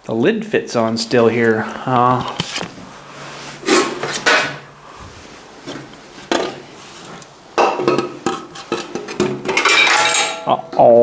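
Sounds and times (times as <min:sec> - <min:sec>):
metal cover clanking: 0:03.6 - 0:04.6, 0:07.6 - 0:11.0.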